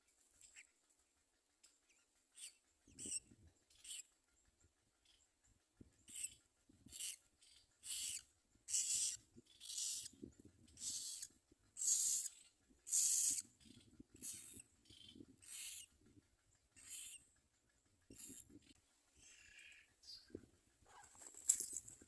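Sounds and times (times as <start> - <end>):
nestlings hissing begging calls: 7.8 - 10.1, 10.8 - 13.4.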